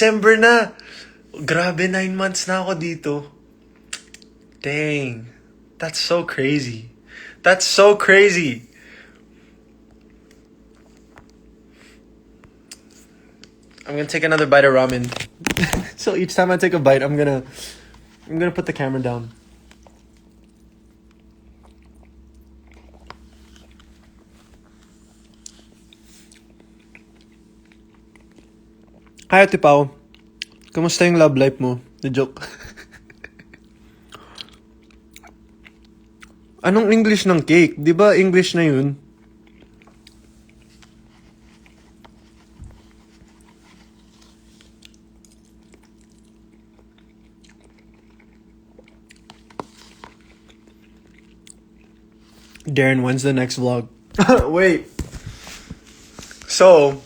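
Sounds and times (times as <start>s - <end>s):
person chewing food: 9.1s - 13.9s, 15.0s - 16.0s, 19.2s - 29.3s, 30.0s - 30.8s, 32.5s - 36.6s, 39.0s - 52.7s.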